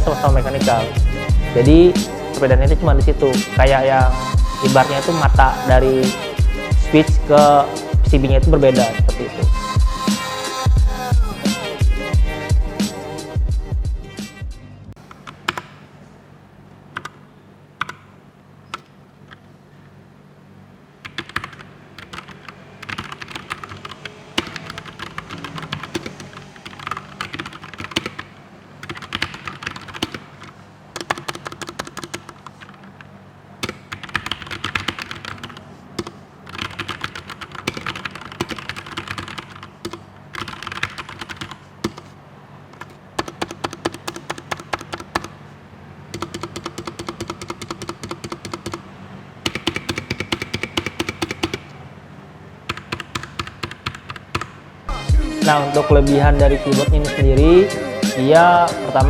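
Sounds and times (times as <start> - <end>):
mechanical keyboard typing: 17.8 - 18.1, 21.0 - 42.1, 42.7 - 45.4, 46.1 - 51.8, 52.7 - 54.6.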